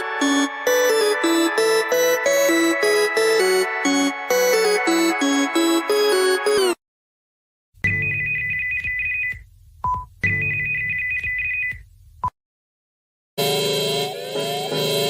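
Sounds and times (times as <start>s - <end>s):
alarm with rising sweeps: 0.0s - 6.8s
high trilling alarm tones: 0.0s - 6.8s.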